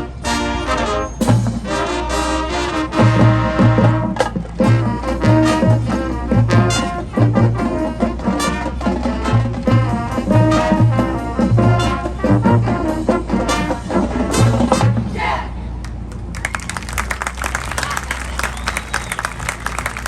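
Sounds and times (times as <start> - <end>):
marching band playing: 15.9 - 20.0.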